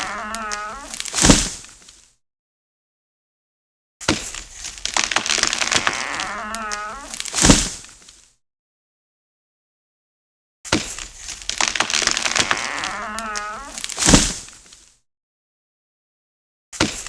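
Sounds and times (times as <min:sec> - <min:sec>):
wood cracking and creaking: 0:00.0 - 0:02.0, 0:04.0 - 0:08.2, 0:10.7 - 0:14.9
tree crashing down: 0:00.5 - 0:01.8, 0:04.1 - 0:08.0, 0:10.8 - 0:14.6.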